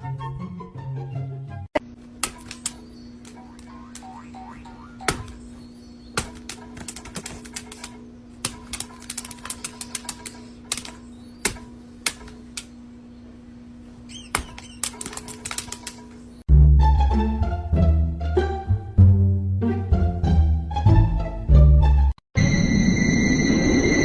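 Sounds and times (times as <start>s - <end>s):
steady low hum: 1.8s - 14.7s
sharp rattling clicks and taps: 6.2s - 12.7s, 14.3s - 16.2s
brief squeak: 14.1s - 14.9s.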